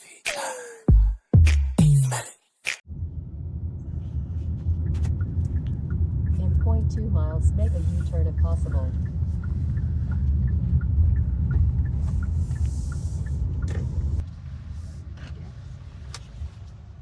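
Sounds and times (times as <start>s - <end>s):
road rumble inside vehicle: 2.9s - 17.0s
faint regular ticking: 4.8s - 14.2s.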